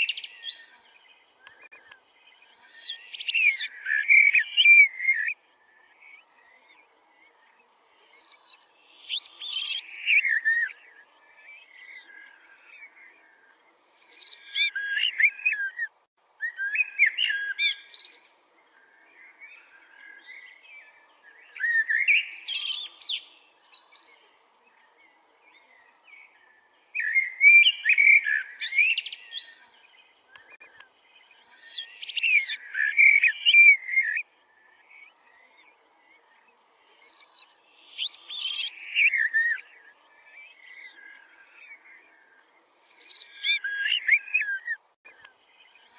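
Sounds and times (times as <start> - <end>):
bird singing rapid chirps: 13.9 - 18.4, 25.8 - 42.0, 42.8 - 45.9.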